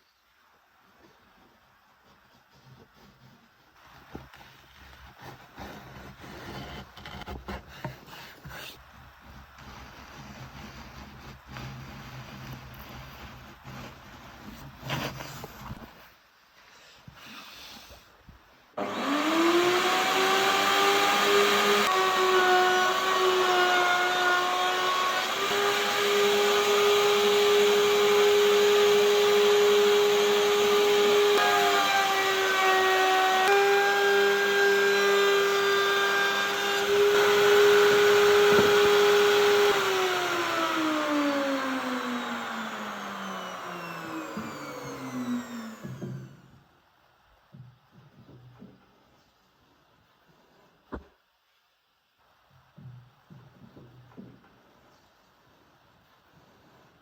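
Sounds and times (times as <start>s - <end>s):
power tool motor whine: 18.8s - 46.5s.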